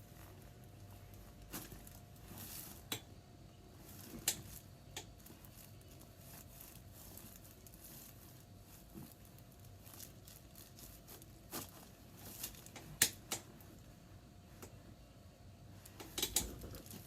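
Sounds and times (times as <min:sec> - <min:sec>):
faint steady hum: 0:00.0 - 0:17.0
joint clicks and pops: 0:16.0 - 0:16.6.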